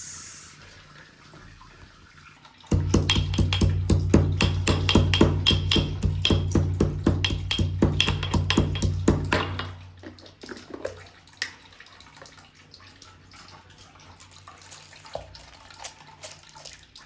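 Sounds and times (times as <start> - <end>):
cookware clicks: 3.0 - 9.8.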